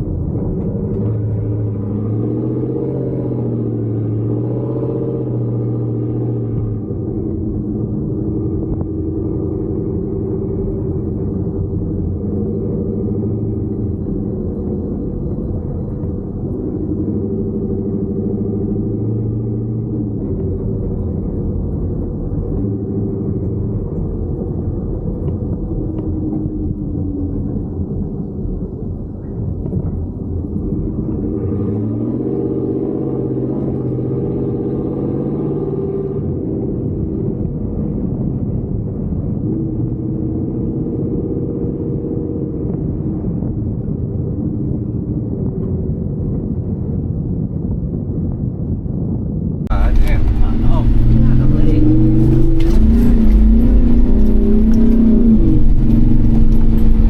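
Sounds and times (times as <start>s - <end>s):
truck engine drone: 0.0s - 45.6s, 49.7s - 57.0s
rumble of driving on dirt: 0.0s - 57.0s
pickup truck engine under load: 49.7s - 57.0s
tyres rumbling on dirt: 49.7s - 57.0s.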